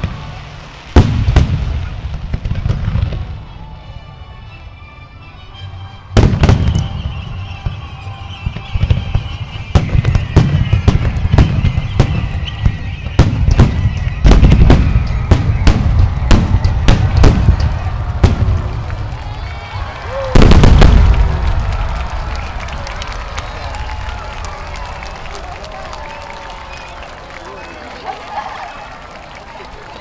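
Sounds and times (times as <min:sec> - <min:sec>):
fireworks booming: 0:00.0 - 0:03.5, 0:06.2 - 0:07.8, 0:08.4 - 0:26.7
falling whistling tone: 0:06.6 - 0:18.2, 0:19.1 - 0:28.9.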